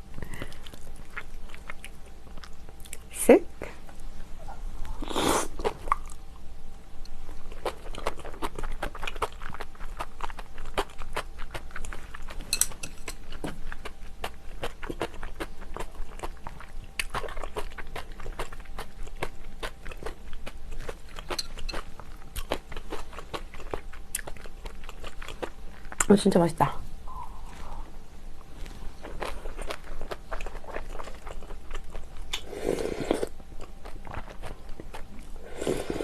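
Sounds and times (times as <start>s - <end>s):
wet chewing and smacking: 0.3s - 3.1s, 7.0s - 26.2s, 28.5s - 32.5s, 33.1s - 35.4s.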